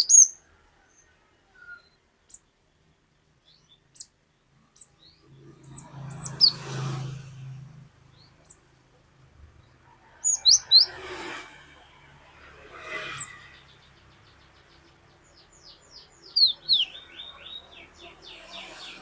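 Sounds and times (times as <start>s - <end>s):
bird singing whistled notes: 0.0s - 0.4s, 15.3s - 19.0s.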